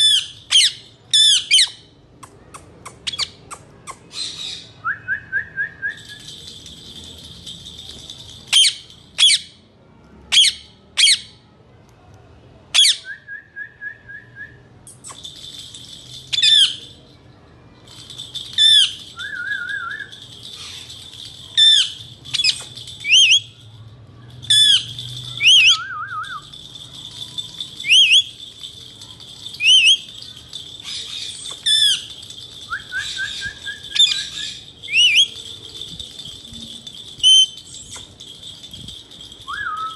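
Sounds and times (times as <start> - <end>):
parakeet trilling notes: 29.6 - 35.4.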